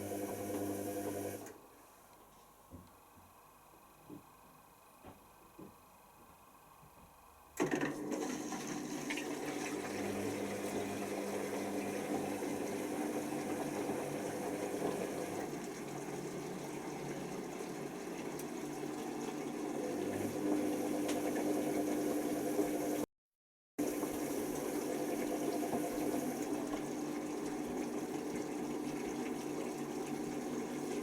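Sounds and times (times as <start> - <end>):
water running in washing machine: 0.0 - 1.6, 7.6 - 23.1, 23.8 - 31.0.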